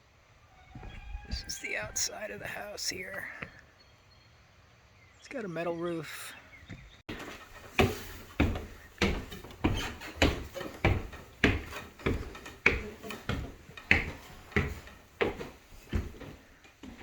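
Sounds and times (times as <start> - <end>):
footsteps on wooden stairs: 0.6 - 3.6, 6.6 - 17.0.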